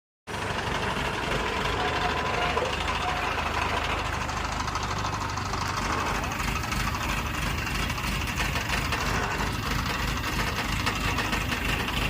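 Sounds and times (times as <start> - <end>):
engine pulsing rumble: 0.3 - 12.0
faint voices: 5.7 - 7.4.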